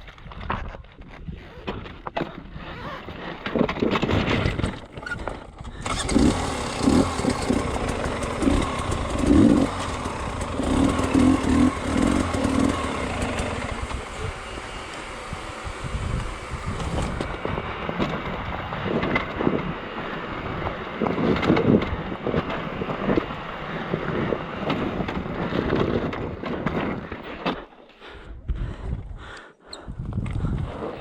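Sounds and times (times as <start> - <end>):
motorcycle engine revving: 5.6 - 26.4.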